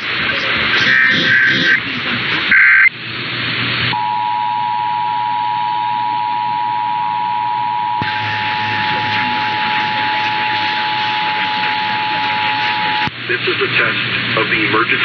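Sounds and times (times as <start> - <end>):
two-tone alert signal: 0.8 - 1.8, 4.0 - 13.1.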